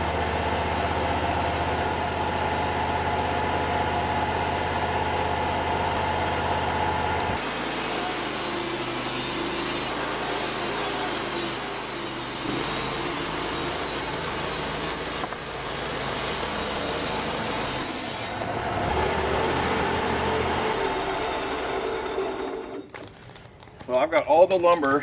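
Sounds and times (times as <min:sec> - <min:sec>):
sawmill engine running: 0:00.0 - 0:23.1
bandsaw blade hissing through log: 0:07.4 - 0:18.5.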